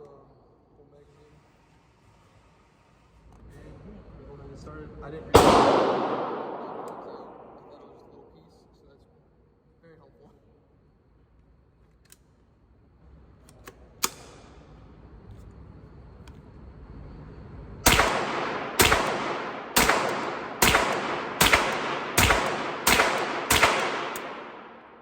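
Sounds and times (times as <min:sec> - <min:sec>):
rifle shots: 0:05.4 - 0:08.2, 0:17.8 - 0:25.0
sharp metallic click: 0:17.9 - 0:24.9.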